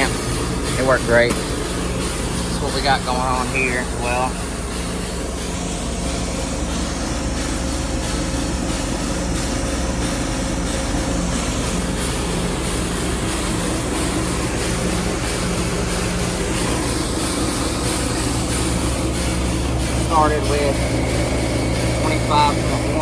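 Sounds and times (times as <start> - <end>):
loud machinery drone: 0.0 - 23.0
low hum: 0.0 - 23.0.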